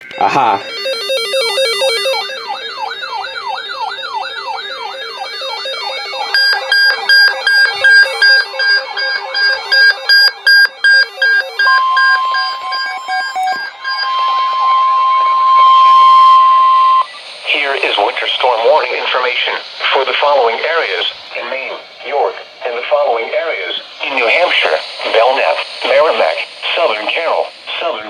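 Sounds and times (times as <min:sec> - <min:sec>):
wailing siren-like alarm sweeps: 0:00.0 - 0:17.8
rapid alarm beeps: 0:00.0 - 0:17.9, 0:24.0 - 0:27.7
steady high alarm tone: 0:00.0 - 0:18.9, 0:24.0 - 0:27.8.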